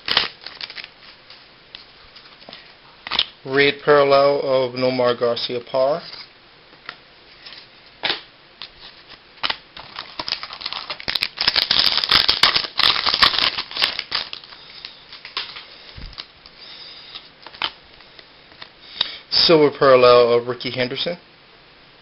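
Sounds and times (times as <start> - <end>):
pack wrapper crinkling: 0.0 - 3.4, 8.6 - 18.7.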